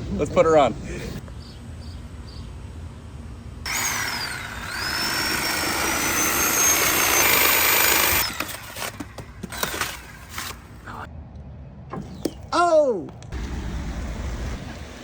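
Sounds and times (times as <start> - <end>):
power tool motor whine: 3.7 - 10.7.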